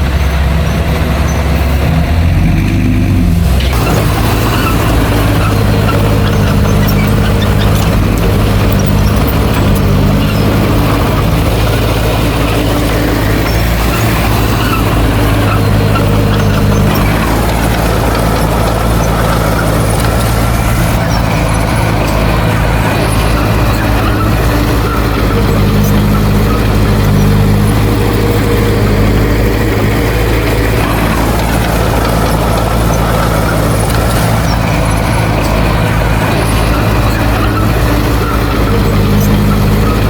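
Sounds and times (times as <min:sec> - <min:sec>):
heavy machine diesel engine droning: 0:00.0 - 0:40.0.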